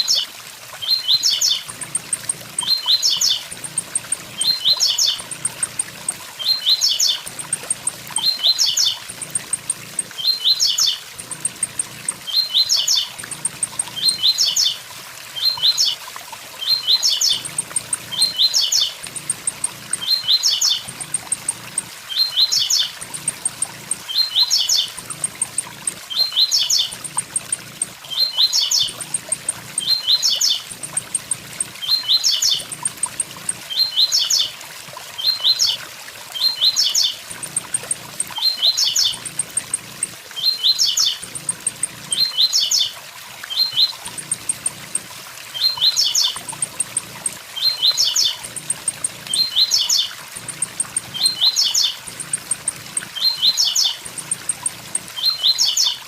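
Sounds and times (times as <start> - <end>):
grassquit singing: 36.4 - 43.0, 43.6 - 56.0.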